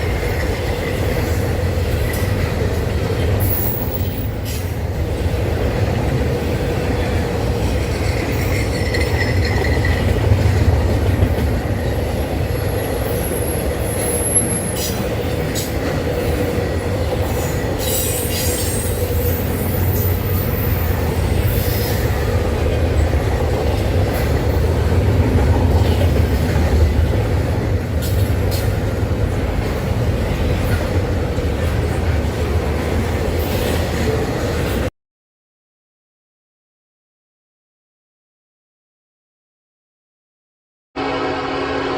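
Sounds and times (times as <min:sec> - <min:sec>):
freight train rumbling past: 0:00.0 - 0:34.9, 0:41.0 - 0:41.9
train wheel squeals: 0:03.4 - 0:04.8, 0:07.8 - 0:10.6, 0:12.3 - 0:16.4, 0:17.2 - 0:22.4.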